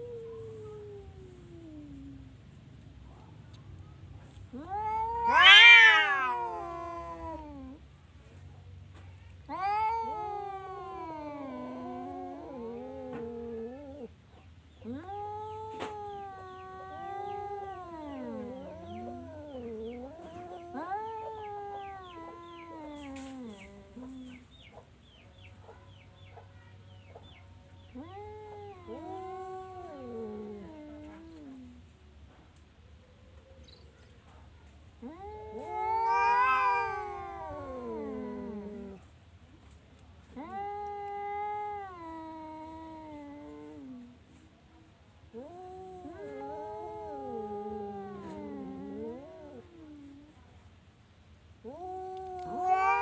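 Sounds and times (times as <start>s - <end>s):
cat yowling: 4.5s - 7.8s, 9.4s - 14.1s, 14.8s - 24.4s, 27.9s - 31.7s, 35.0s - 39.0s, 45.3s - 50.4s, 51.6s - 53.0s.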